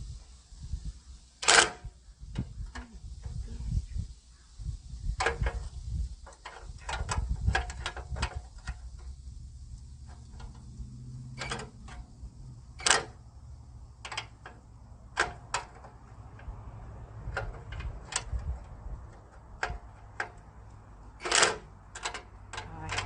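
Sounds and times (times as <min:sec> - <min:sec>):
wind rumbling on microphone: 0:00.0 - 0:23.0
wrench clicking on bolt: 0:01.4 - 0:01.9, 0:10.1 - 0:12.1, 0:12.7 - 0:13.2, 0:14.0 - 0:16.5, 0:17.3 - 0:20.5, 0:21.1 - 0:23.0.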